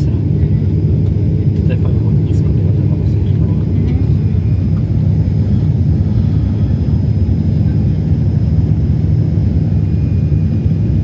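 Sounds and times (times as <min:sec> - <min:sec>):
airliner engines rumbling: 0:00.0 - 0:11.0
faint high whine: 0:00.0 - 0:11.0.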